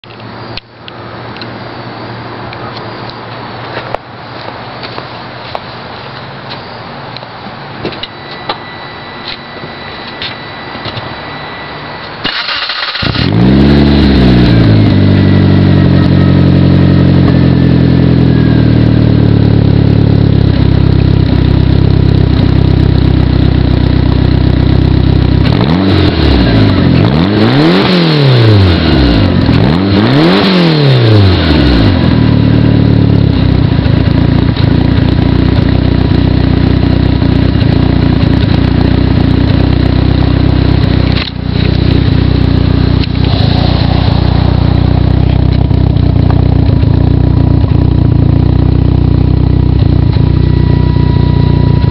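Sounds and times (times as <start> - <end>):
car engine starting and idling: 6.2 - 51.9
car engine revving: 11.8 - 51.9.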